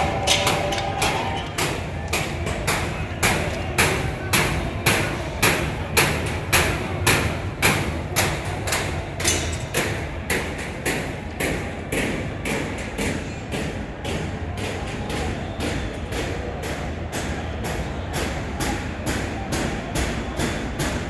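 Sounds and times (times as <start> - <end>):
background din: 0.0 - 2.1
rhythmic banging: 0.0 - 8.9.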